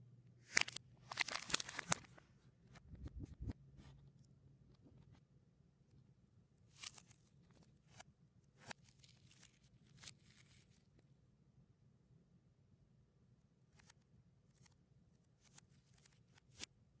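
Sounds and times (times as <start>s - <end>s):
plastic wrappers crinkling: 0.5s - 2.2s.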